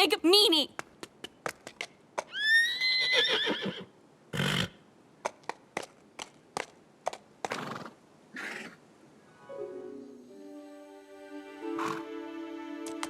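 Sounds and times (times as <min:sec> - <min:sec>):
hooves clopping: 0:00.8 - 0:02.4.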